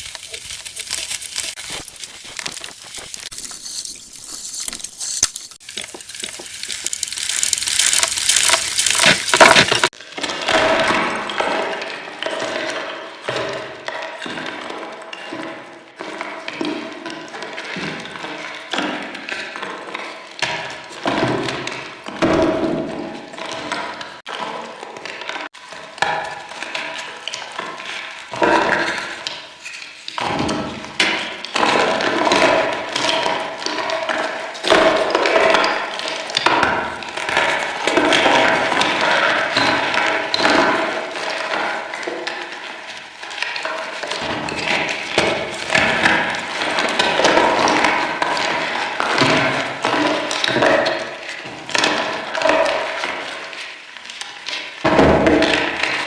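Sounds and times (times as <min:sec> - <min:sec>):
chalk crunching and snapping: 0:00.0 - 0:09.9.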